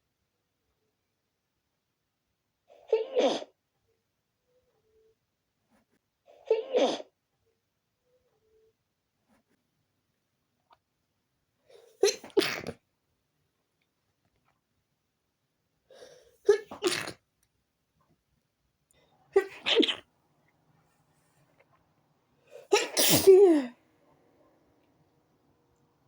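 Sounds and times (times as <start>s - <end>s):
woman sneezing: 12.0s - 12.7s, 19.4s - 20.0s, 22.5s - 23.8s.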